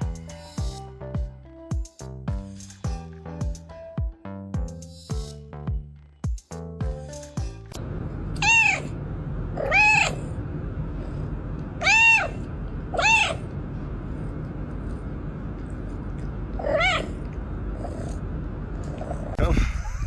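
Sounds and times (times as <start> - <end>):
steady low background noise: 7.8 - 20.0
cat meowing: 8.4 - 9.0, 9.6 - 10.4, 11.8 - 13.5, 16.5 - 18.2, 18.8 - 19.4.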